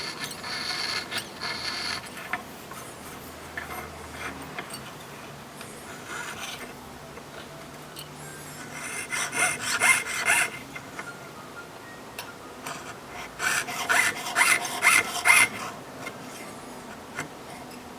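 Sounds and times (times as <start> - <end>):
saw rasping through metal: 0.0 - 2.1, 8.7 - 10.6, 13.4 - 15.8.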